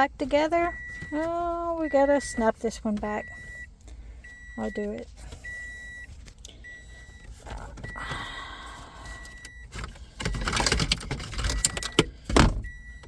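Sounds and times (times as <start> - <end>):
high electronic beep: 0.7 - 2.5, 3.2 - 3.7, 5.4 - 7.2
plastic trim rattling and clicking: 9.8 - 12.8.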